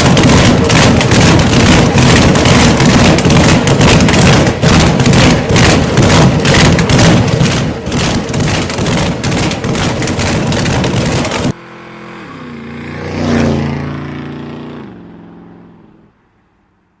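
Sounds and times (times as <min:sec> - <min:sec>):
rough car engine rumble: 0:00.0 - 0:17.0
car passing by: 0:11.5 - 0:16.9.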